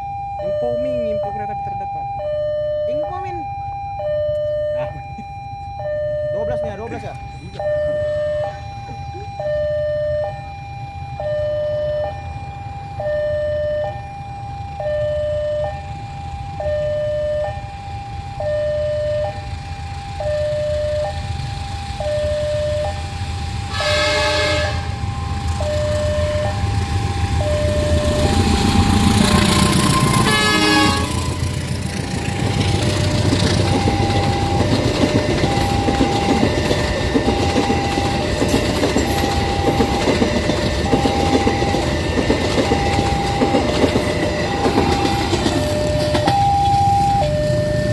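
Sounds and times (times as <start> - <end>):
diesel locomotive rumble: 0.0 - 47.9
two-tone railway warning alarm: 0.0 - 47.9
train horn blast: 23.7 - 25.1, 28.7 - 31.5.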